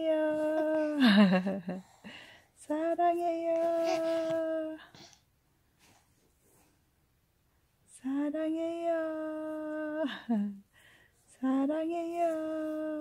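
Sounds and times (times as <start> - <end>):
woman crooning sing-song: 0.0 - 1.6, 2.6 - 4.9, 8.0 - 10.6, 11.4 - 13.0.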